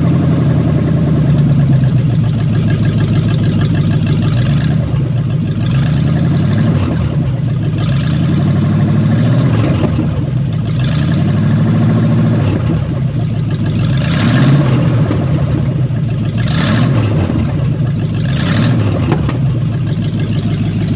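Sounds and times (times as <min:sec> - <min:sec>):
engine idling and revving: 0:00.0 - 0:20.9.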